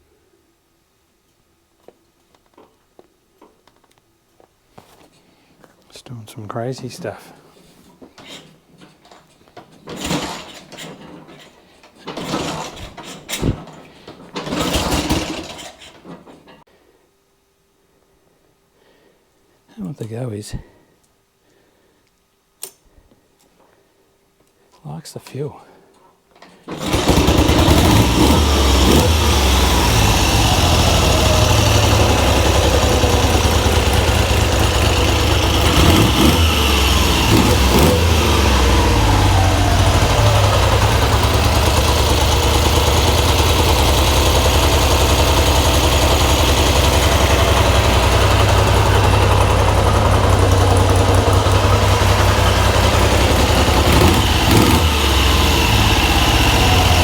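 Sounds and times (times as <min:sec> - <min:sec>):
motorcycle engine revving at idle: 0:14.4 - 0:15.5, 0:26.7 - 0:57.0.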